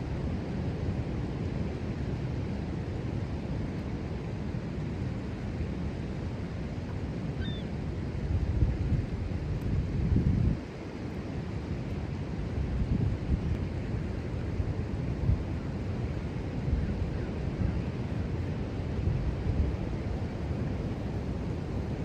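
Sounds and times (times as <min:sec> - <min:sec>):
wind buffeting microphone: 0:08.3 - 0:10.7, 0:18.9 - 0:22.0
ocean surf rumbling: 0:13.8 - 0:22.0.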